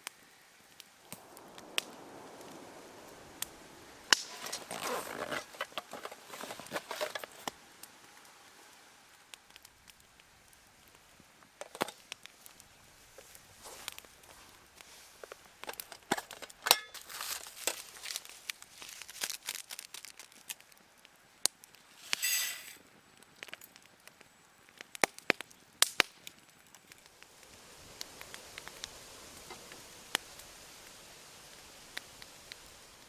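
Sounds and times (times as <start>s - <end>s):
campfire crackling: 0.0s - 33.0s
brief hiss: 21.9s - 22.8s.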